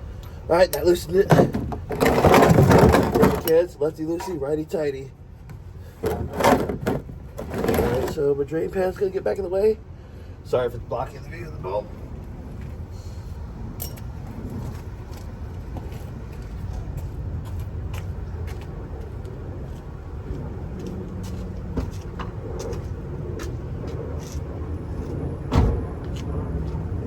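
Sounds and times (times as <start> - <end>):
steady low rumble: 0.0 - 27.0
loud thump: 25.5 - 25.9.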